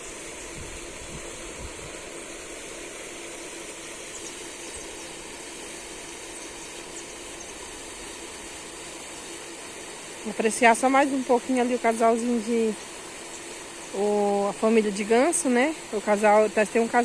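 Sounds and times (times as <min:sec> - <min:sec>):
faint steady hum: 0:00.0 - 0:17.0
steady hiss: 0:00.0 - 0:17.0.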